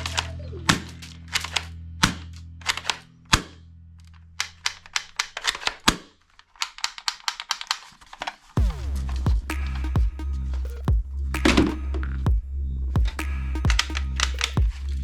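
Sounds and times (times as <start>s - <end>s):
toy guns clicking and popping: 4.4s - 8.3s
background music low note: 8.6s - 15.0s.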